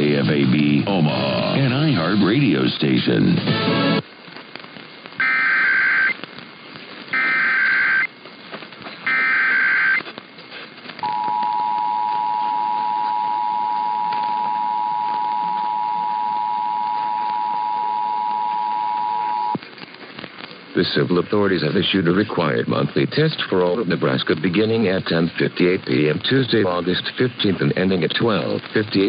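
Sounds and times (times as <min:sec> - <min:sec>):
two-tone attention signal: 0:09.1 - 0:10.0, 0:11.0 - 0:19.6.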